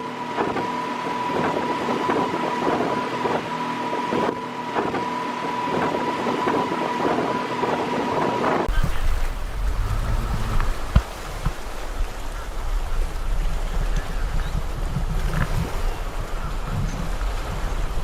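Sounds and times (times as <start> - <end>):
high whine: 0.0 - 11.6
motorboat engine running: 0.0 - 18.0
wind on microphone: 0.0 - 18.0.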